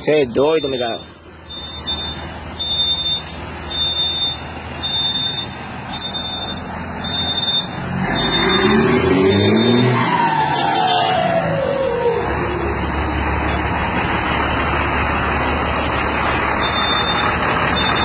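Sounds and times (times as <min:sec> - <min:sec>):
diesel truck engine revving: 0:00.0 - 0:18.0
repeating high beep: 0:00.5 - 0:10.0, 0:16.6 - 0:17.2, 0:17.8 - 0:18.0.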